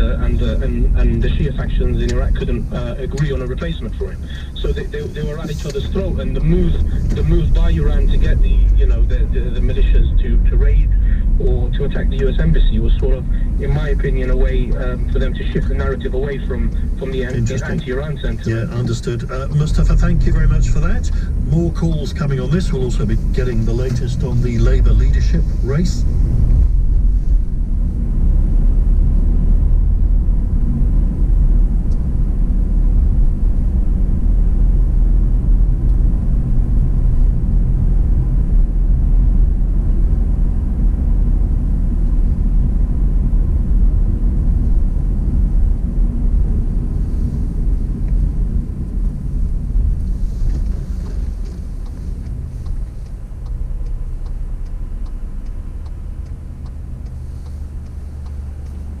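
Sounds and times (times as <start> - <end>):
car engine and road rumble: 0.0 - 59.0
faint light ticks: 50.4 - 59.0.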